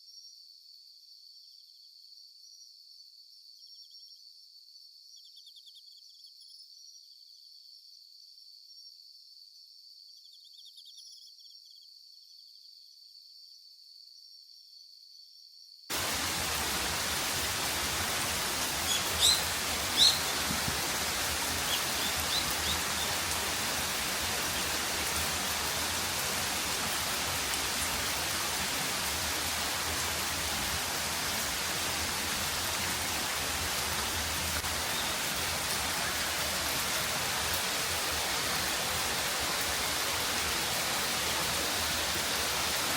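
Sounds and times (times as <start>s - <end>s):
heavy rain falling: 15.9s - 42.9s.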